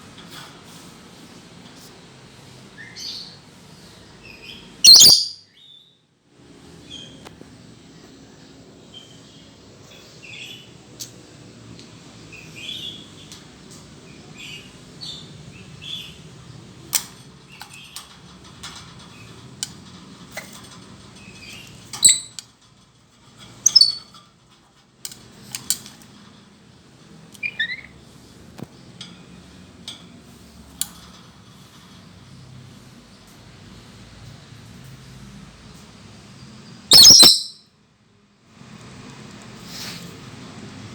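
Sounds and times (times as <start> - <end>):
parrot chirps and squawks: 4.8 - 5.4, 23.6 - 24.0, 27.4 - 27.9, 36.9 - 37.6.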